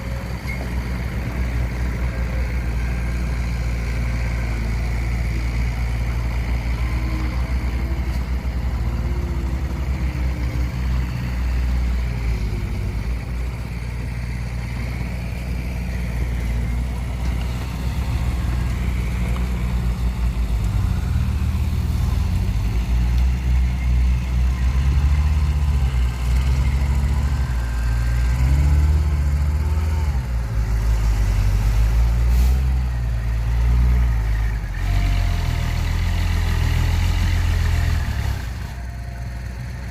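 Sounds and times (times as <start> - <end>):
heavy diesel engines running: 0.0 - 39.9.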